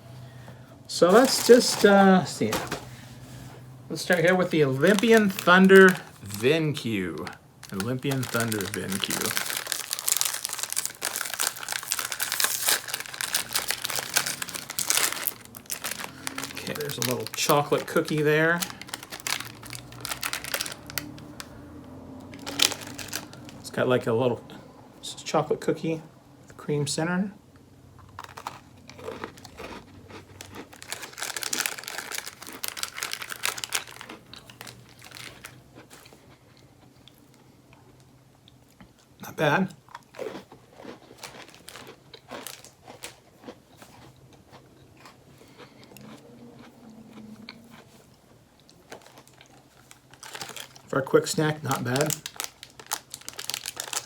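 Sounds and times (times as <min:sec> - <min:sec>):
plastic wrapper crinkling: 0:01.0 - 0:02.9, 0:03.9 - 0:21.5, 0:22.2 - 0:23.8, 0:28.2 - 0:36.1, 0:40.1 - 0:43.2, 0:48.9 - 0:54.0.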